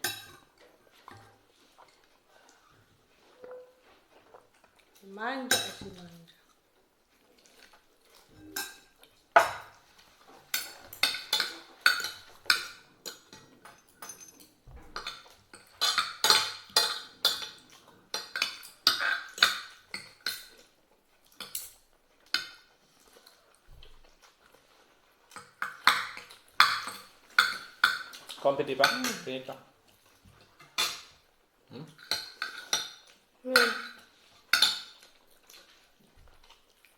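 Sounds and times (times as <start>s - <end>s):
cutlery clinking on plates: 0.0s - 2.0s, 8.1s - 20.6s, 25.3s - 29.3s, 30.3s - 31.2s, 31.9s - 35.6s.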